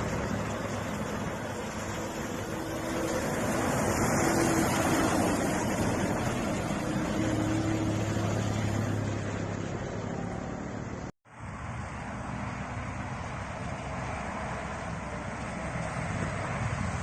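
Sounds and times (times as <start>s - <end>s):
bus engine humming: 0.0s - 17.0s
wind on microphone: 14.4s - 17.0s.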